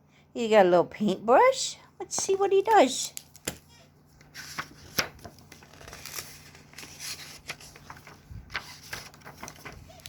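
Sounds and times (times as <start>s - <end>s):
paper pages rustling: 2.7s - 10.0s.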